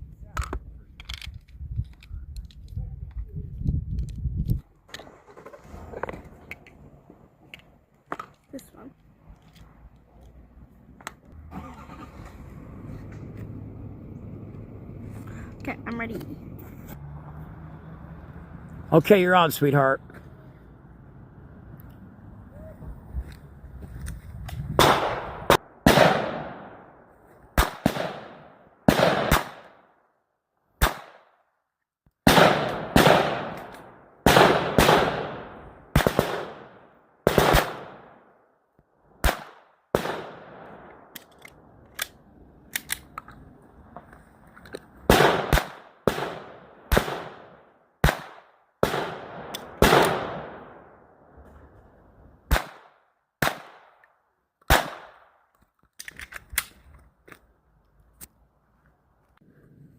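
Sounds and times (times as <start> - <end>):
gunshots with echo: 24.8 - 26.9, 27.6 - 29.8, 32.3 - 38.2, 39.2 - 40.9, 45.1 - 50.8.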